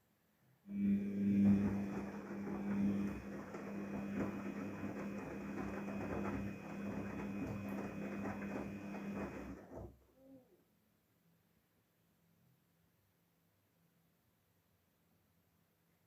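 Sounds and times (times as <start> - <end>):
water and laundry churning: 0.7 - 10.0
washing machine motor hum: 0.7 - 10.1.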